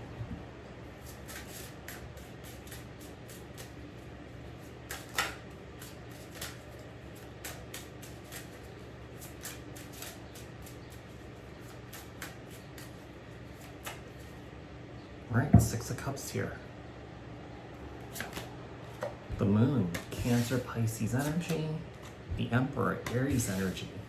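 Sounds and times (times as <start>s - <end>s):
cards shuffling and clicking: 4.6s - 14.3s, 18.0s - 19.2s, 19.8s - 22.2s, 23.0s - 24.0s.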